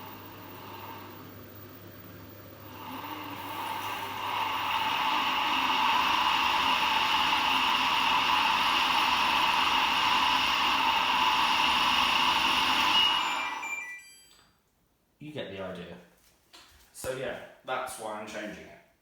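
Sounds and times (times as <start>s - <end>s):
fan whirring: 0.0s - 14.1s.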